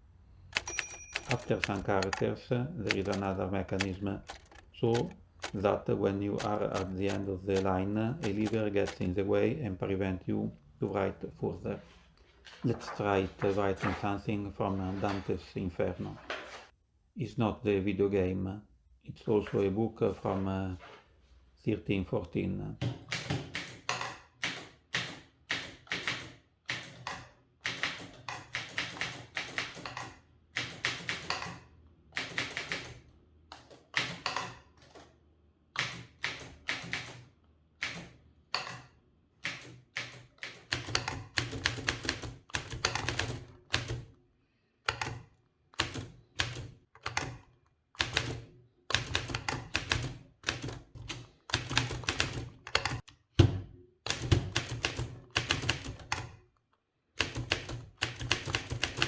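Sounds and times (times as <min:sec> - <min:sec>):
manual typewriter typing: 0:00.4 - 0:09.4, 0:23.0 - 0:33.0, 0:35.8 - 0:38.8, 0:39.4 - 0:44.2, 0:44.8 - 0:53.1, 0:54.0 - 0:56.4, 0:57.2 - 0:59.0.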